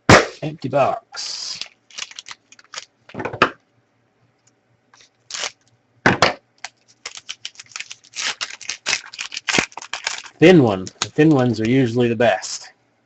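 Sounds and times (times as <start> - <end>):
card packaging rustling and tearing: 1.4 - 2.9, 5.0 - 5.6, 6.6 - 11.8.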